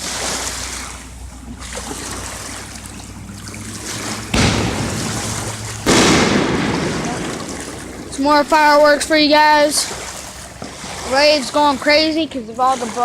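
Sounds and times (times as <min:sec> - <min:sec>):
waves lapping against riverbank: 0:00.0 - 0:13.0
sudden burst of noise: 0:04.3 - 0:08.2.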